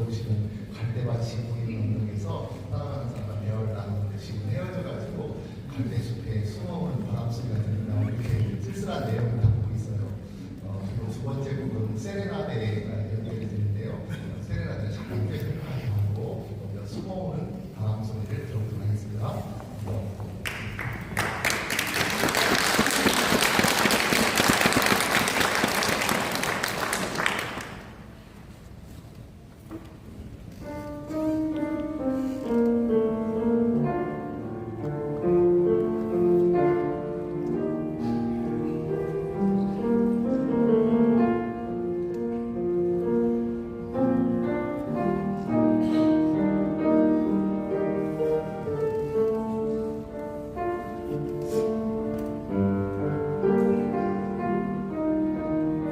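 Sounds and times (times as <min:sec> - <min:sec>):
piano playing: 0:00.0 - 0:14.0, 0:30.3 - 0:55.9
audience applause: 0:20.4 - 0:28.0.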